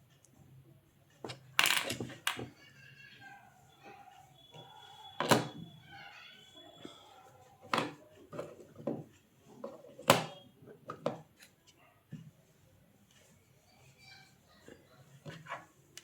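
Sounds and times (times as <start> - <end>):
knocks of objects being handled: 7.7 - 11.5.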